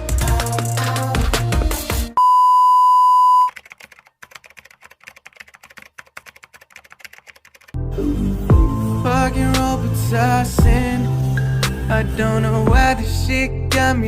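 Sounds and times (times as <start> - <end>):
music: 0.0 - 2.2, 7.8 - 14.0
steady electronic beep: 2.2 - 3.5
faint rapid clicking and crackle: 3.5 - 7.8.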